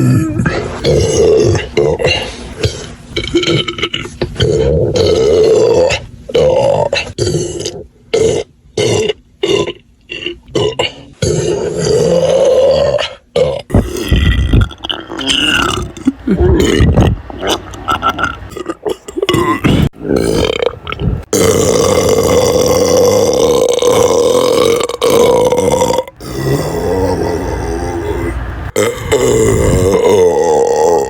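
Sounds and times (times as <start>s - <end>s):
woman belching: 0.0s - 31.0s.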